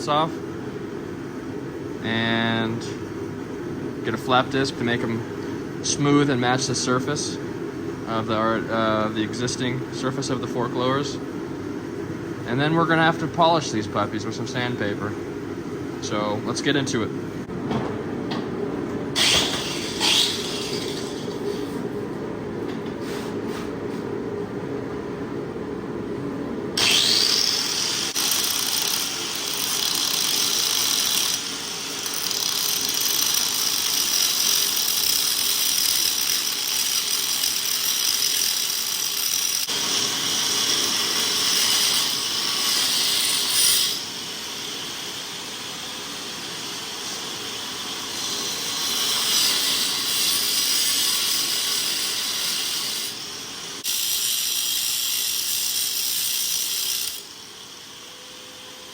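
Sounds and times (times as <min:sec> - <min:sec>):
angle grinder grinding metal: 0:19.2 - 0:21.9, 0:26.8 - 0:58.6.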